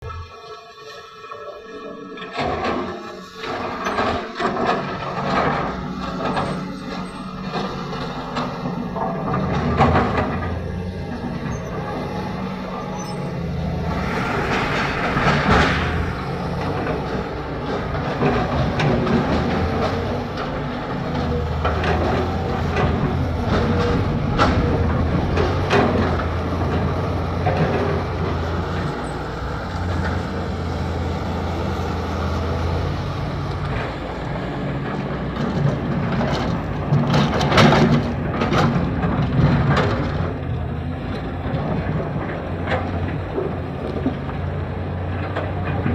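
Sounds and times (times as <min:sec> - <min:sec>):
diesel engine under load: 0:00.0 - 0:45.9
metallic clanks and knocks: 0:02.3 - 0:30.8.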